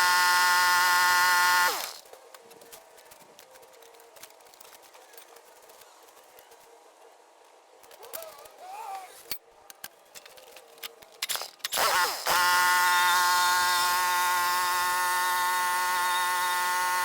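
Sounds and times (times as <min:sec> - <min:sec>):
power tool motor whining: 0:00.0 - 0:02.0, 0:11.8 - 0:17.0.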